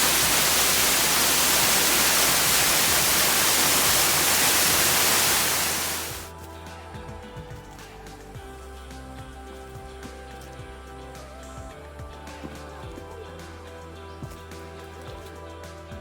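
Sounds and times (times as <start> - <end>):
waterfall roar: 0.0 - 6.3
soft music with held notes: 6.3 - 16.0.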